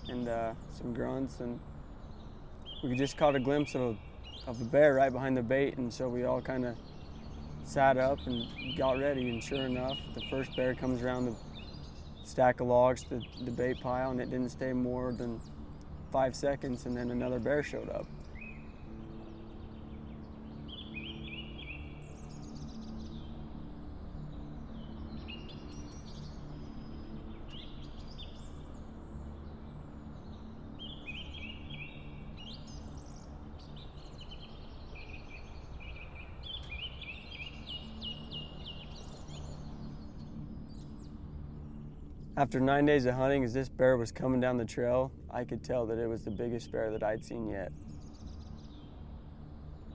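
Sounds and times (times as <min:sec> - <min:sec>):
songbirds chirping: 0:00.0 - 0:49.9.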